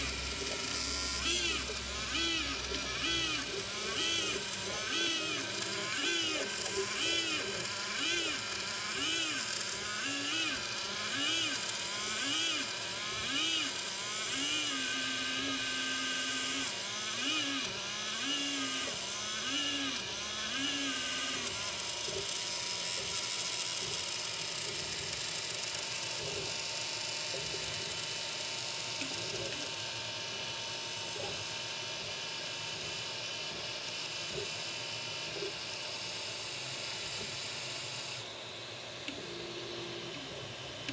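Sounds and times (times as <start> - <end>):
printer motors whining in sweeps: 0.0 - 40.9
steady whir with high tone: 0.0 - 40.9.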